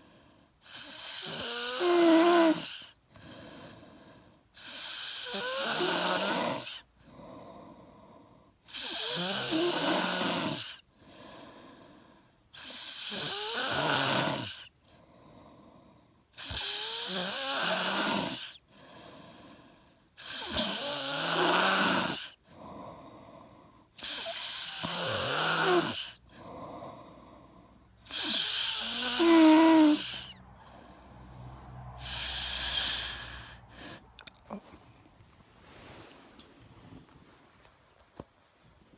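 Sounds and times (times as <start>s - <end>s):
loud rattling snoring: 0.7s - 2.9s, 4.6s - 6.9s, 8.7s - 10.8s, 12.6s - 14.7s, 16.4s - 18.6s, 20.2s - 22.8s, 24.0s - 27.4s, 28.0s - 31.3s, 32.0s - 33.8s.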